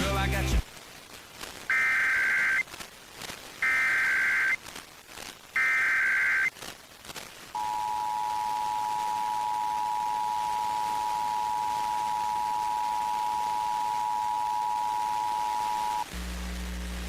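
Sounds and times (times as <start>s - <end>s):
data tone bursts: 1.7s - 2.6s, 3.6s - 4.6s, 5.6s - 6.5s, 7.6s - 16.1s.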